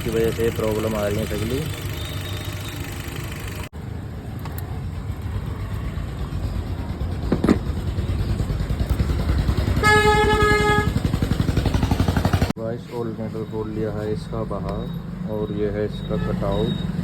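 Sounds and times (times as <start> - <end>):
vehicle engine running: 0.0 - 3.7, 4.6 - 12.6.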